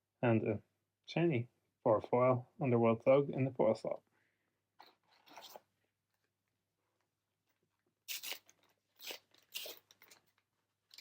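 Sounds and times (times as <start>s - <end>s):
foil wrapper crinkling and tearing: 8.1s - 11.0s.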